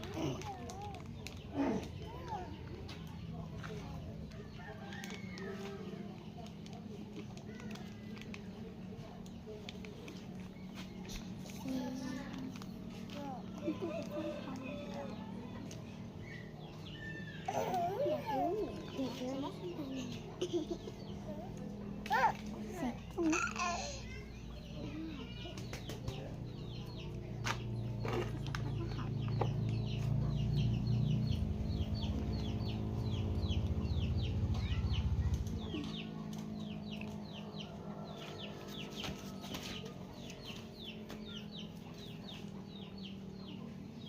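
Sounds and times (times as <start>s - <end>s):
chicks cheeping: 18.7s - 21.9s, 24.1s - 44.0s.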